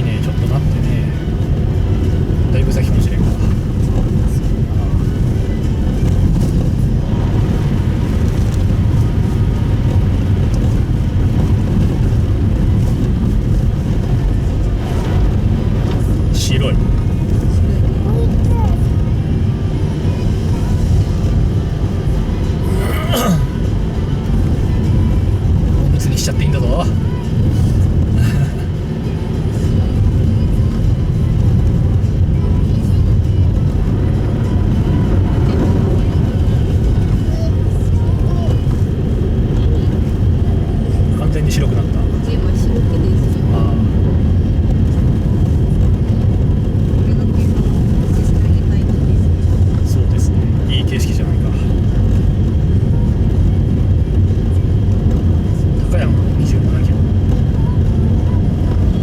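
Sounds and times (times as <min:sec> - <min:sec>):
tyre and road noise in car: 0:00.0 - 0:59.0.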